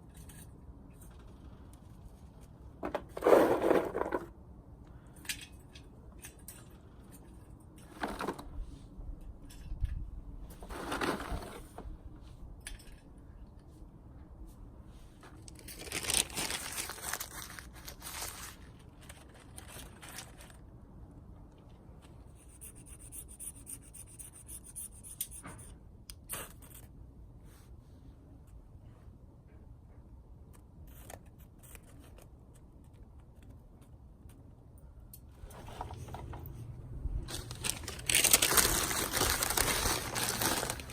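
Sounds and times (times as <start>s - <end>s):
scraping or rustling handling: 2.8s - 4.3s, 10.5s - 11.9s, 15.2s - 20.7s, 35.4s - 40.9s.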